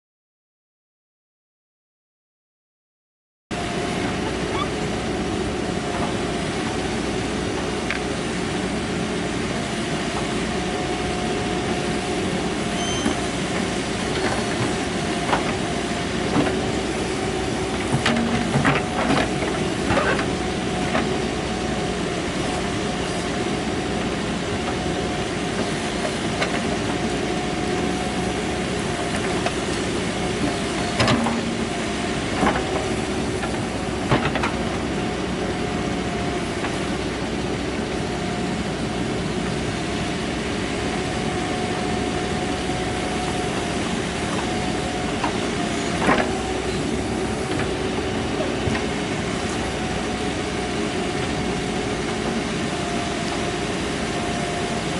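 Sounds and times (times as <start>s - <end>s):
diesel engine running: 3.5s - 54.9s.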